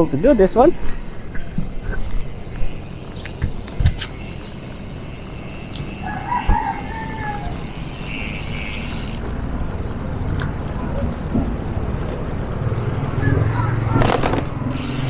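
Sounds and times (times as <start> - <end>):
wind and bicycle road noise: 0.0 - 15.0
rooster crowing: 5.1 - 8.2.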